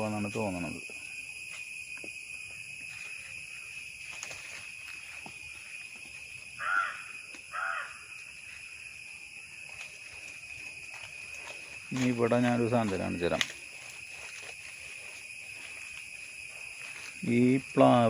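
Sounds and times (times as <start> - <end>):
high-pitched insect chorus: 0.0 - 18.0
crow cawing: 6.6 - 8.2.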